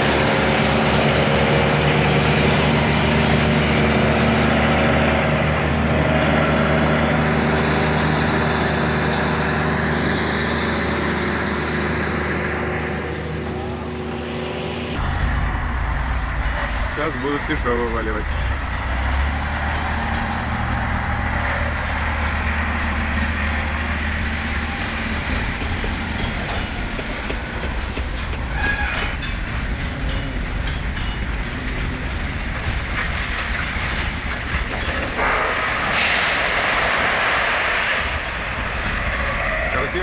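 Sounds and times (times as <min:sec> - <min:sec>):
heavy vehicle engine running: 0:00.0 - 0:40.0
load being dumped: 0:33.5 - 0:39.0
loud rushing hiss: 0:35.2 - 0:38.6.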